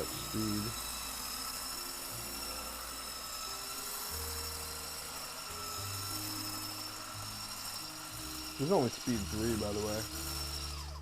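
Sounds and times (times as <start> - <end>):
electric mixer whining: 0.0 - 11.0.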